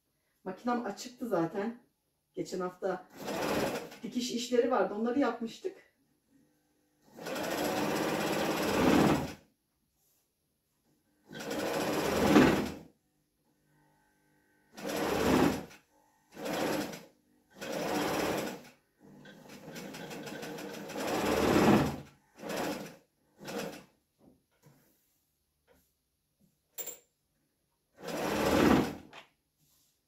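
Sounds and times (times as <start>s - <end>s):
sewing machine stitching: 3.1s - 4.2s, 7.1s - 9.4s, 11.2s - 12.9s, 14.7s - 24.0s, 27.9s - 29.2s.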